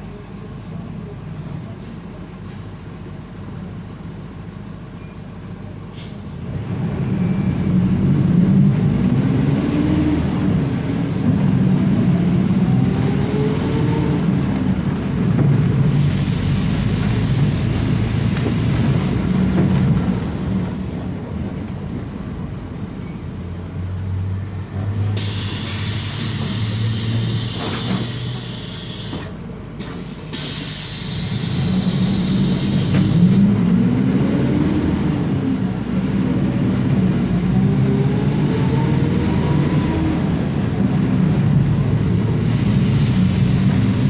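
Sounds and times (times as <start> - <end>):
air brake hiss: 1.4 - 2.8, 5.9 - 6.3, 15.8 - 19.1, 25.1 - 33.4, 42.4 - 44.0
bus diesel engine revving hard: 6.4 - 29.2, 30.2 - 44.0.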